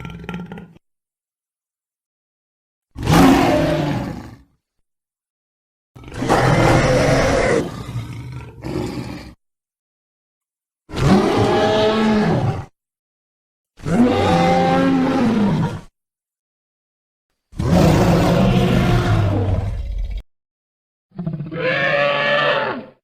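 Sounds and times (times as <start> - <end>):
dinosaur roars: 3.0 - 4.5, 6.0 - 9.4, 10.9 - 12.8, 13.8 - 15.9, 17.6 - 20.2, 21.2 - 23.0.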